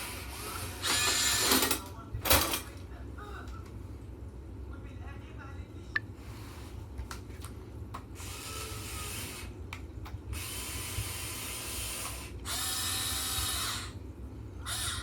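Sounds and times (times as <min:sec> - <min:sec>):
electric gear motors whirring: 0:00.0 - 0:01.6, 0:08.2 - 0:09.5, 0:10.4 - 0:14.0, 0:14.7 - 0:15.0.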